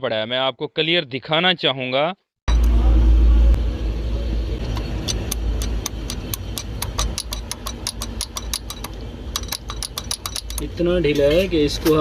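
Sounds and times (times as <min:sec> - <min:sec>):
low engine rumble: 0:02.5 - 0:12.0
rocker arm clicking metal on metal: 0:04.6 - 0:10.8.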